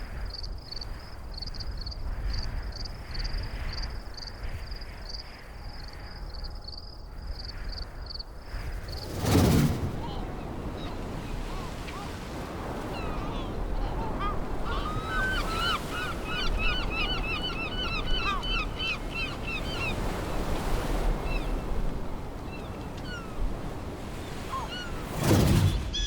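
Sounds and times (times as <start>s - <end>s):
flock of birds calling: 10.0s - 21.8s.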